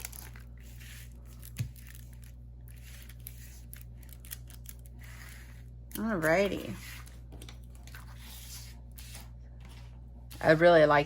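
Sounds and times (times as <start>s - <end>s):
plastic packaging crinkling: 0.0s - 5.0s
low electrical hum: 0.0s - 11.0s.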